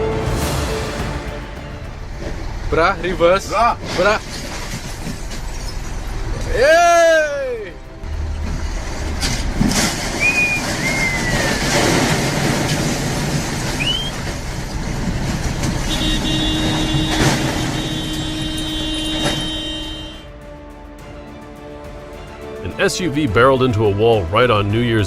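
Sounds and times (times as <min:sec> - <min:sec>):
steady tone: 0:00.0 - 0:10.1
road traffic rumble: 0:07.5 - 0:21.0.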